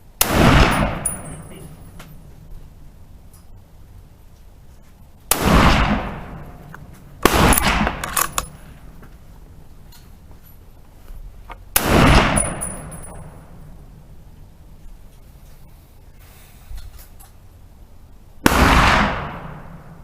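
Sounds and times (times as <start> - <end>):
rifle shots echoing: 0.2 - 2.3, 5.3 - 9.0, 11.7 - 14.0, 18.4 - 20.0.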